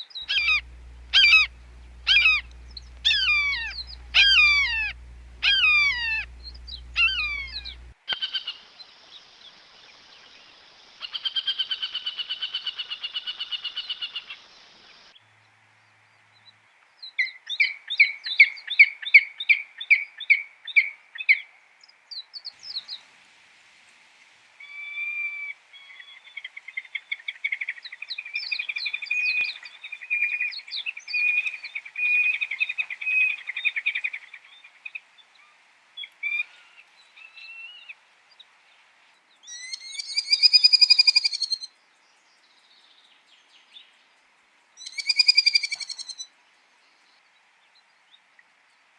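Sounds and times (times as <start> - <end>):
falcon harsh screams: 0.3 - 6.3, 7.0 - 7.9
falcon chattering calls: 0.3 - 8.5, 44.9 - 46.1.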